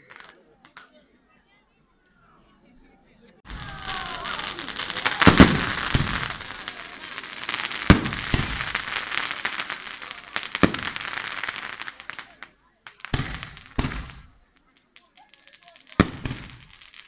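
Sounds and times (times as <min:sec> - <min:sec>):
loud firework bangs: 0:03.5 - 0:12.4, 0:13.0 - 0:14.4, 0:15.9 - 0:17.0
fireworks crackling: 0:03.5 - 0:17.0.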